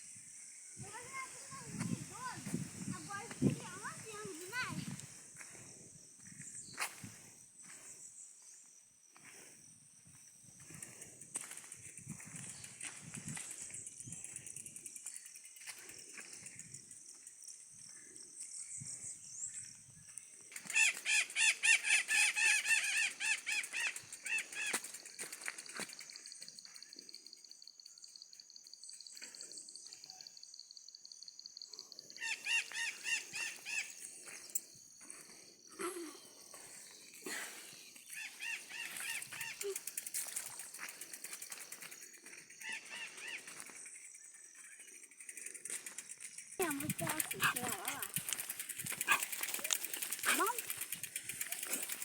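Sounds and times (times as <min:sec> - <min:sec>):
bird calls: 0:31.7 - 0:34.7, 0:36.0 - 0:40.6, 0:41.2 - 0:45.4
high-pitched ticking or buzzing: 0:38.5 - 0:52.0.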